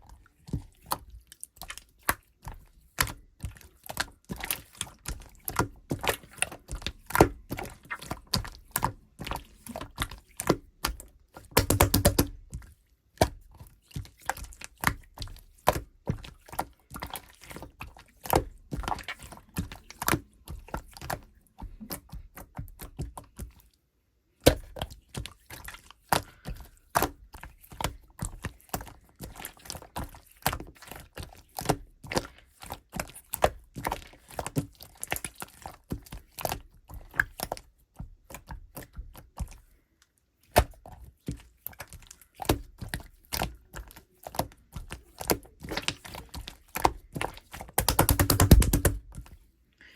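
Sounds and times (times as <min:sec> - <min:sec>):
slime squished by hand: 0:00.4 - 0:23.6, 0:40.4 - 0:49.4.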